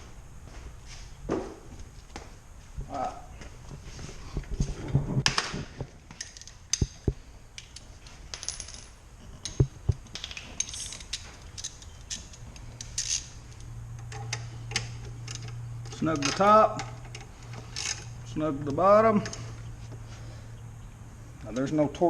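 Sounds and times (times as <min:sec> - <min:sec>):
metallic clinks of tools and bolts: 0:07.6 - 0:18.2.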